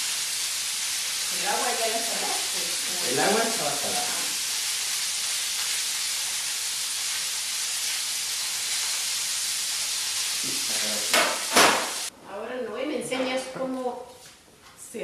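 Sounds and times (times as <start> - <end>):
food sizzling in a hot pan: 0.0 - 12.1
sharp knock: 11.1 - 12.0.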